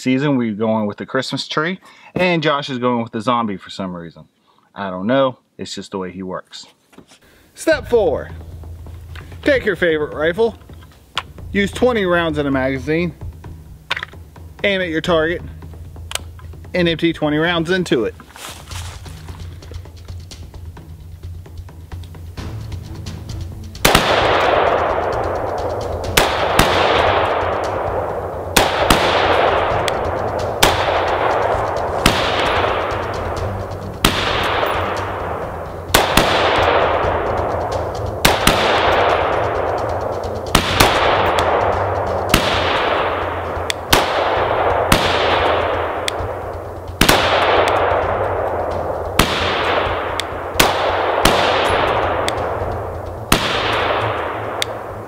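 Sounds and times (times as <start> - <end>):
rifle shots with echo: 23.8 - 55.0.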